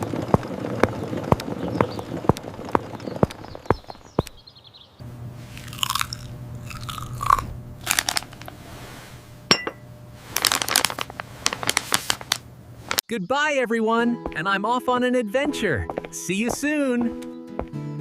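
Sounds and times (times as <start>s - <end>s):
steady low hum: 0.0s - 13.0s
crunching: 5.5s - 8.7s, 10.2s - 13.0s.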